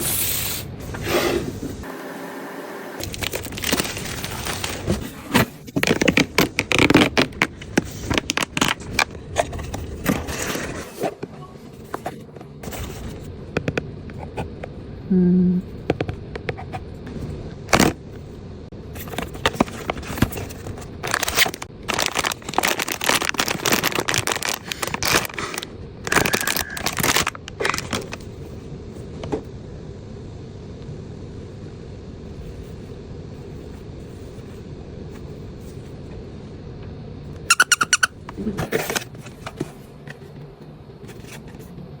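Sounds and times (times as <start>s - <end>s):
steady low hum: 2.9s - 42.0s
packaging crinkling and rustling: 3.0s - 11.1s, 19.0s - 28.4s.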